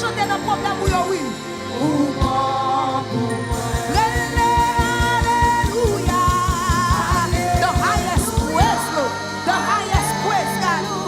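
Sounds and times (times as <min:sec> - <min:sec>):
church band playing: 0:00.0 - 0:11.0
person singing with vibrato: 0:00.0 - 0:11.0
rapid drum beat: 0:03.5 - 0:09.0.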